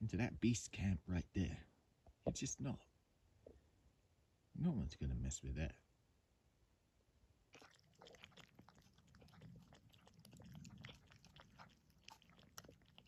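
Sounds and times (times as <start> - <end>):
dog chewing and crunching: 7.5 - 13.0.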